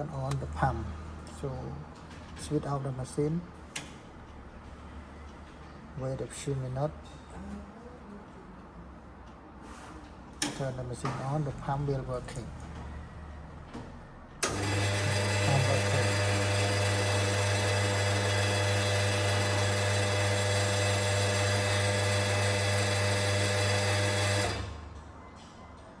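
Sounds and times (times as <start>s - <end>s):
water pump humming: 14.4s - 24.7s.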